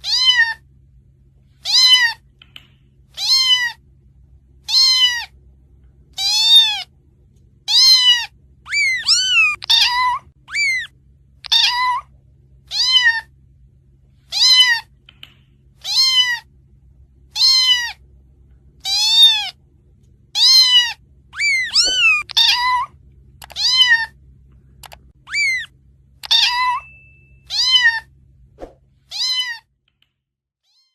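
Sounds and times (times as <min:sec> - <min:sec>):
kitten meowing: 0:00.0 - 0:00.6, 0:01.6 - 0:02.2, 0:03.2 - 0:03.8, 0:04.7 - 0:05.3, 0:06.2 - 0:06.9, 0:07.7 - 0:12.1, 0:12.7 - 0:13.3, 0:14.3 - 0:14.9, 0:15.8 - 0:16.5, 0:17.4 - 0:18.0, 0:18.9 - 0:19.6, 0:20.4 - 0:24.2, 0:25.3 - 0:26.9, 0:27.5 - 0:28.1, 0:29.1 - 0:29.7.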